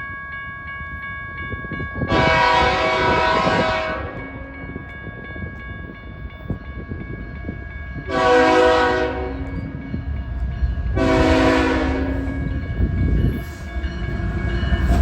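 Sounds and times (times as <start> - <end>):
train rumble: 0.6 - 15.0
locomotive air horn blasts: 2.1 - 4.2, 8.1 - 9.4, 11.0 - 12.3.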